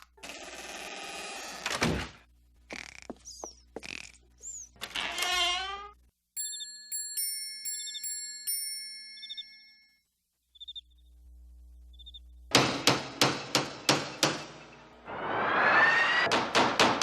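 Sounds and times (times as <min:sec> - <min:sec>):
ringing metallic dings: 0:06.4 - 0:10.0
rising whine: 0:14.9 - 0:16.3
sharp metallic bangs: 0:16.2 - 0:17.0.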